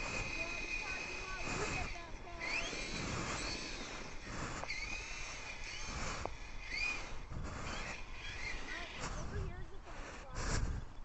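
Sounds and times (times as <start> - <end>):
heavy breathing through nose: 0.0 - 11.0
high chirping glides: 0.0 - 11.0.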